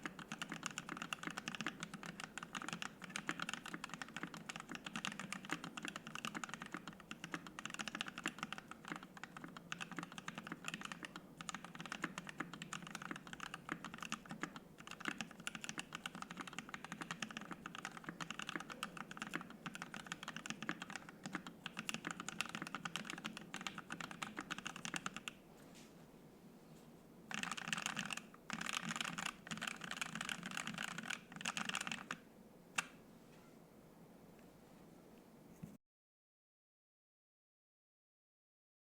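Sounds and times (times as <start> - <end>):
mechanical keyboard typing: 0.0 - 25.4, 27.3 - 32.2.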